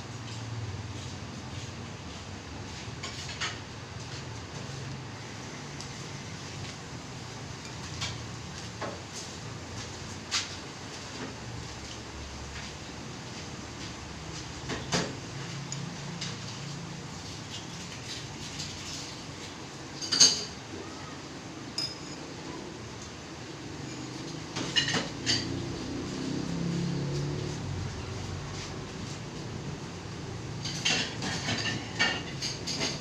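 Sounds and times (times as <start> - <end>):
dishes and utensils clinking: 19.9 - 20.6, 21.7 - 22.4, 23.8 - 26.0, 30.6 - 33.0.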